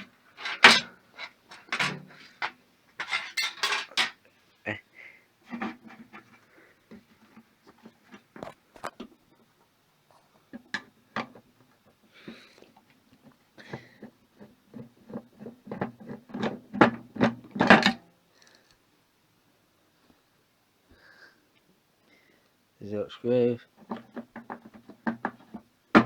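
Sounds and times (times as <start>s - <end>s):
metal screw clicking and clanking: 0.0s - 4.2s.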